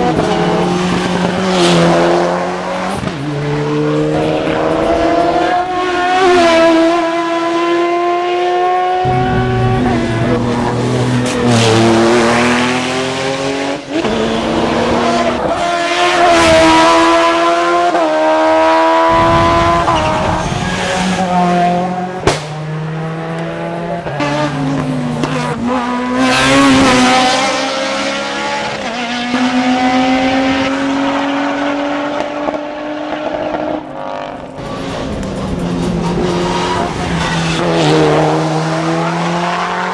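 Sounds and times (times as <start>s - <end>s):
race car engines revving: 0.0s - 39.9s
sharp crack: 22.2s - 22.6s.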